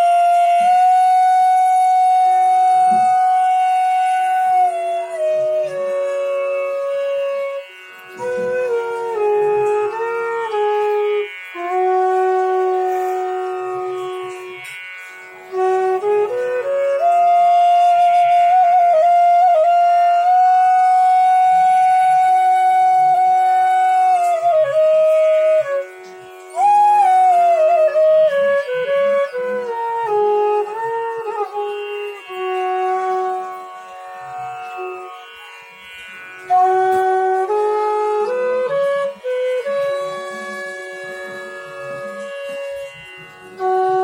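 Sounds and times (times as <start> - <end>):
bamboo flute melody: 0.0 - 44.0
low drone note: 36.4 - 44.0.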